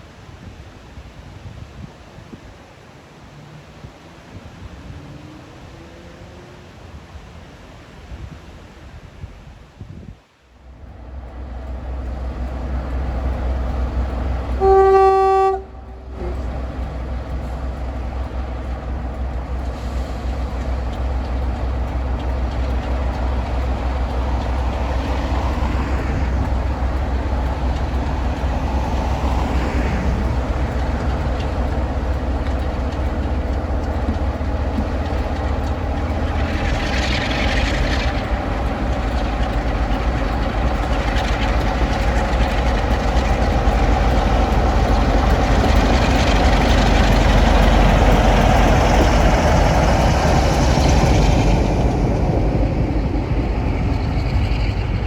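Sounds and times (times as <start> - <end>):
locomotive engine droning: 10.5 - 55.0
locomotive horn blast: 14.5 - 16.6.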